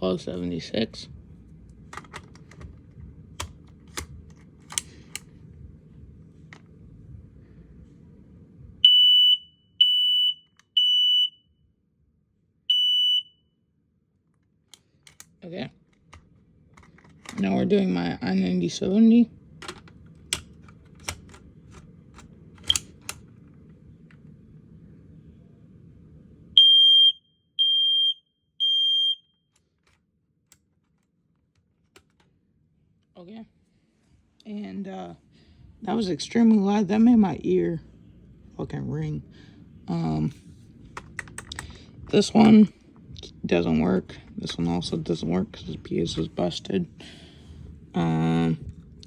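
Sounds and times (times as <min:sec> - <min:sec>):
smoke alarm shrill beeps: 0:08.8 - 0:11.5, 0:12.7 - 0:13.4, 0:26.6 - 0:29.4.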